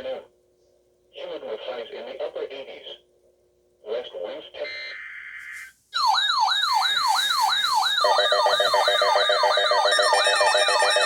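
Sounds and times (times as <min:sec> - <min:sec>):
sweeping siren alert tone: 0:04.8 - 0:11.0.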